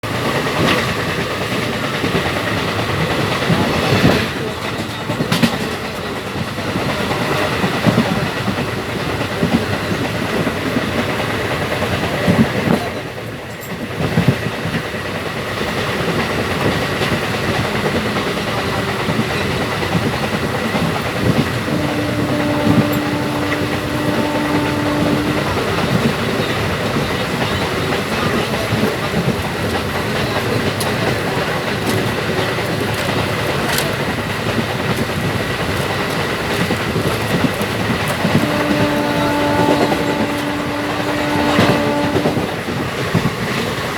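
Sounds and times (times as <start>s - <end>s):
train wheels rattling on track: 0.0s - 43.9s.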